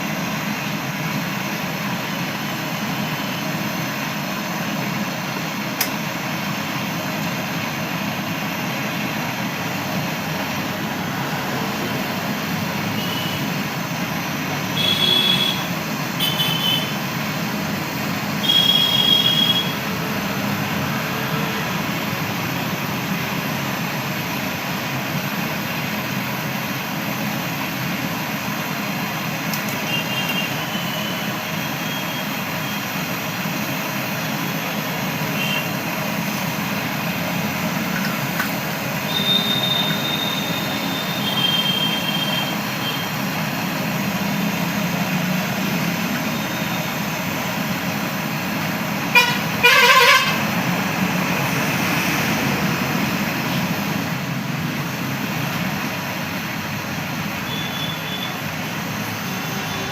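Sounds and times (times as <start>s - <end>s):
vehicle horn honking: 13.0s - 13.5s, 14.8s - 17.0s, 18.4s - 19.8s, 35.3s - 35.7s, 39.1s - 43.1s, 49.1s - 50.4s, 57.5s - 58.4s.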